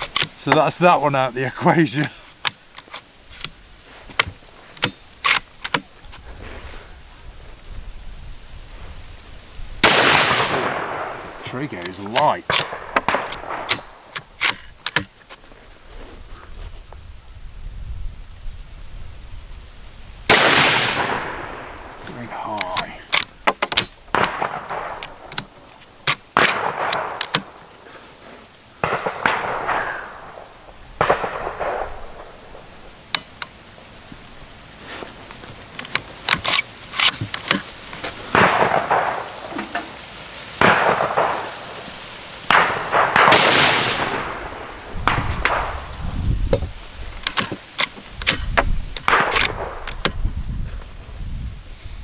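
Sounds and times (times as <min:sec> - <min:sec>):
sharp cracks and clicks: 0:00.0 - 0:00.9, 0:04.2 - 0:05.9, 0:09.8 - 0:15.2, 0:22.2 - 0:27.8, 0:28.8 - 0:33.6, 0:35.8 - 0:40.0, 0:42.5 - 0:45.8, 0:47.2 - 0:50.2
rifle shots with echo: 0:09.8 - 0:14.6, 0:20.3 - 0:21.9, 0:23.8 - 0:27.6, 0:28.8 - 0:32.7, 0:38.3 - 0:39.5, 0:40.6 - 0:41.8, 0:42.5 - 0:45.8, 0:49.0 - 0:49.8.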